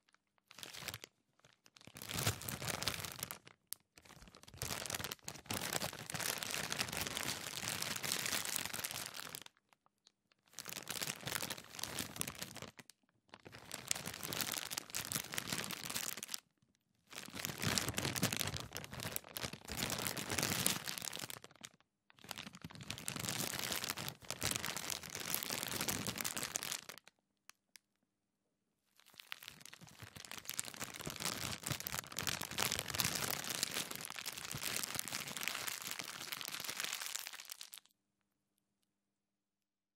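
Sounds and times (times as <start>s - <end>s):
plastic bag crinkling: 0.4s - 9.6s, 10.6s - 16.4s, 17.1s - 27.1s, 29.0s - 37.9s.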